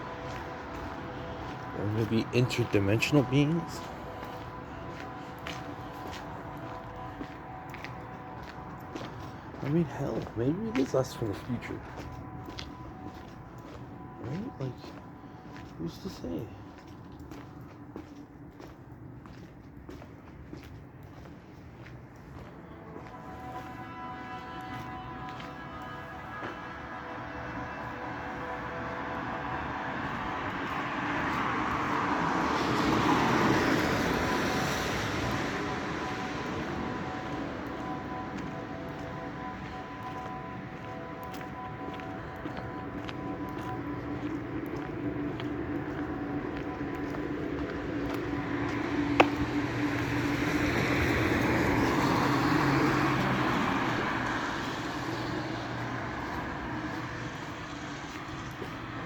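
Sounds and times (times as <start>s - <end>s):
faint steady hum of tones: 3.2s - 9.5s, 35.0s - 50.0s
rushing of passing vehicle: 28.0s - 41.9s, 42.7s - 59.0s.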